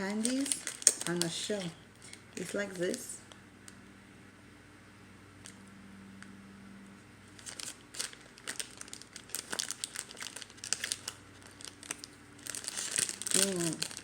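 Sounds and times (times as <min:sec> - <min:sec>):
candy wrapper crinkling: 0:00.0 - 0:03.4, 0:07.3 - 0:14.0.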